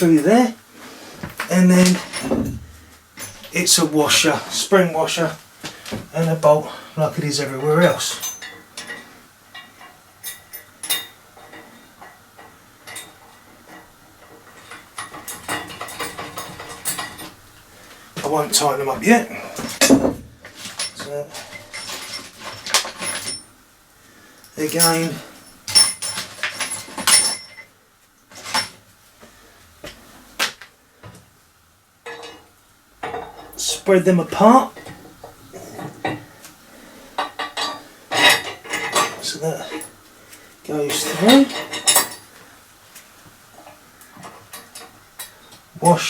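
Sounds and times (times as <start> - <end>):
small steel parts clinking: 7.8 - 17.4, 19.6 - 23.6, 24.4 - 28.8, 40.9 - 42.3.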